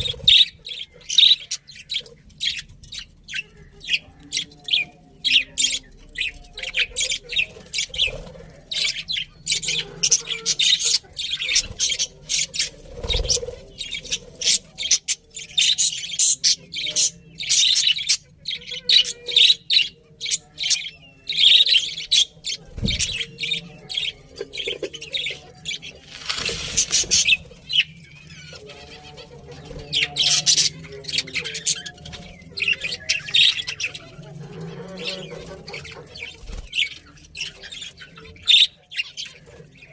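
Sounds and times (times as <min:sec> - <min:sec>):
budgerigars chirping: 0:00.0 - 0:39.9
brief rustle: 0:26.0 - 0:27.3.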